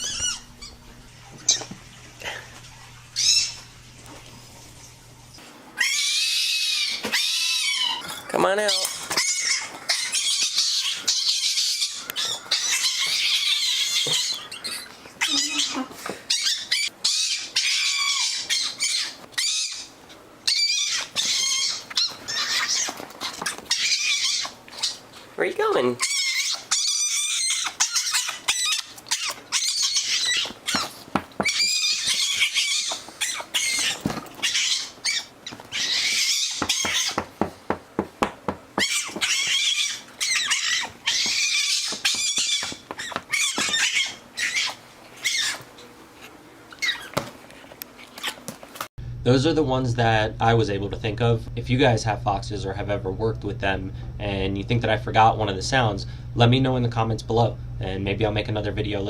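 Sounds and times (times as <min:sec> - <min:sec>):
fox squealing: 0:00.0 - 0:00.8, 0:03.2 - 0:03.7, 0:05.8 - 0:25.1, 0:26.0 - 0:37.3, 0:38.8 - 0:45.7, 0:46.7 - 0:47.2.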